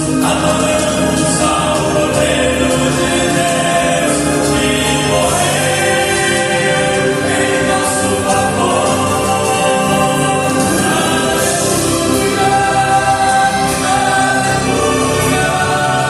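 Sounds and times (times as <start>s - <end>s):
vocal quartet singing a hymn: 0.0s - 16.0s.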